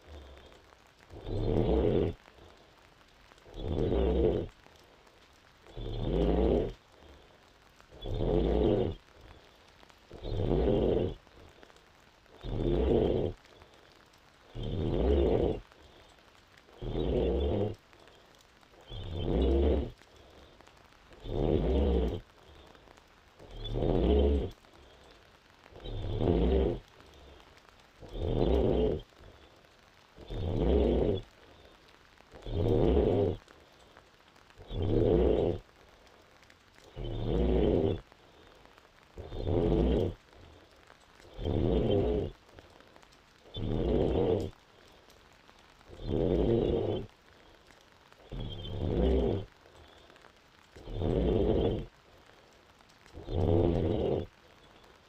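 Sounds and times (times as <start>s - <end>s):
quiet breathing: 0.0s - 55.0s
woman snoring: 10.2s - 11.2s, 16.8s - 17.8s, 25.8s - 26.8s, 28.0s - 29.0s, 30.2s - 31.2s, 32.4s - 33.4s, 34.6s - 35.6s, 36.9s - 38.0s, 39.2s - 40.2s, 43.5s - 44.5s, 45.9s - 47.1s, 48.3s - 49.5s, 50.8s - 51.9s, 53.2s - 54.3s.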